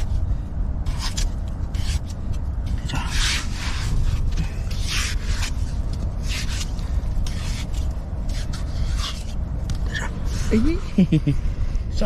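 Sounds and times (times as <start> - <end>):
tool scraping through wet sand: 0.8 - 2.2, 2.8 - 9.4.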